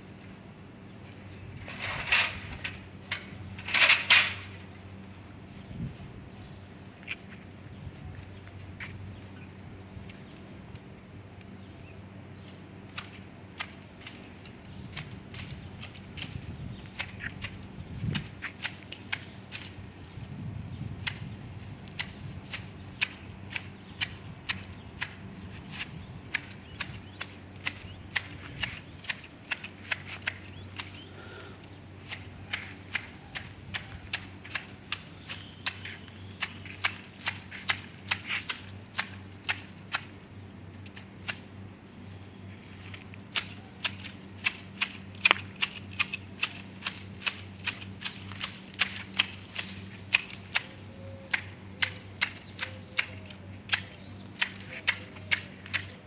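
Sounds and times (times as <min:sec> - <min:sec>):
hand shears snipping foliage: 0:12.9 - 0:41.5, 0:42.8 - 0:56.0.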